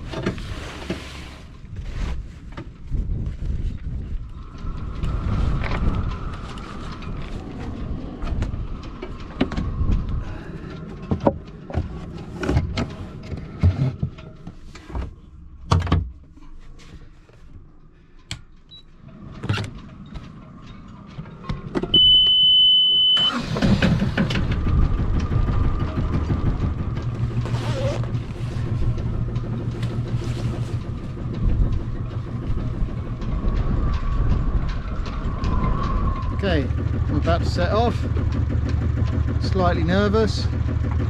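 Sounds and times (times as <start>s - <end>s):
gusty wind on microphone: 1.7s - 13.2s, 23.8s - 38.7s
wind whistling in rigging: 1.7s - 13.2s, 23.3s - 40.4s
steady high beep: 22.0s - 23.3s.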